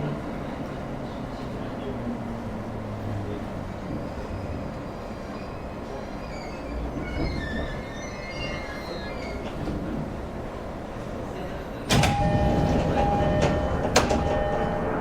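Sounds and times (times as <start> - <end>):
metallic squeals from train wheels: 5.3 - 9.6
train running rumble: 9.3 - 15.0.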